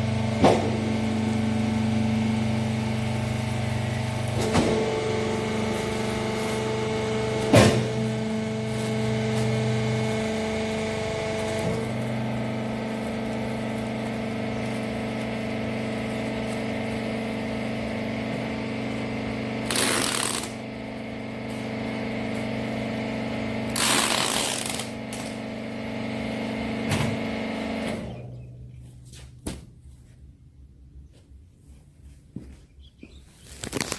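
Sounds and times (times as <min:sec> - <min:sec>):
baler hydraulic motor humming: 0:00.0 - 0:28.8.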